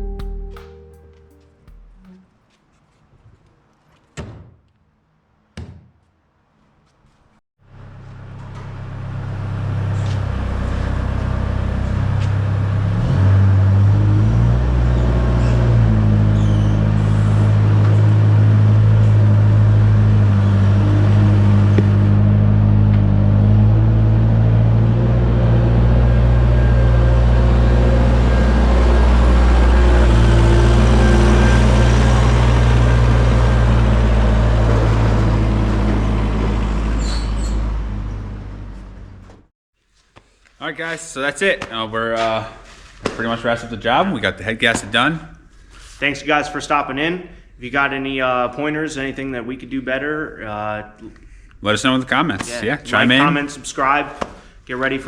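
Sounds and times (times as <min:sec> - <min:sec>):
diesel engine running: 0:07.7 - 0:39.5.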